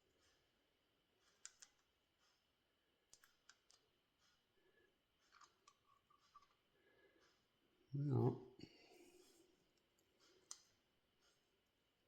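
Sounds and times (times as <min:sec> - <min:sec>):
faint metal clicks and ticks: 0:01.2 - 0:02.4, 0:05.2 - 0:07.5, 0:09.7 - 0:11.5.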